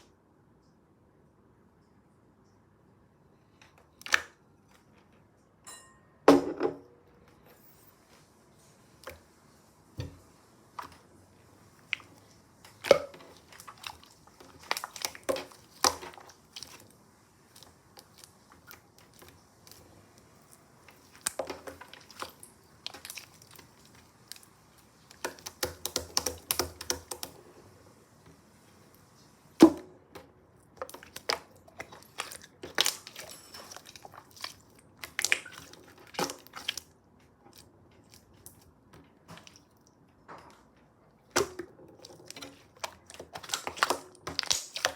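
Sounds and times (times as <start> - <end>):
slime clicking and crackling: 17.5 - 27.3, 30.8 - 36.9, 42.2 - 44.9.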